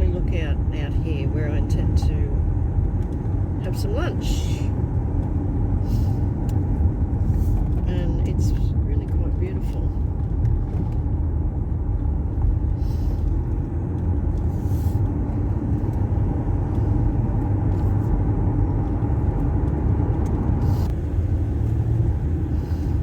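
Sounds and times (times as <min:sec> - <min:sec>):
car engine rumble: 0:00.0 - 0:23.0
tyre rumble on road: 0:02.0 - 0:23.0.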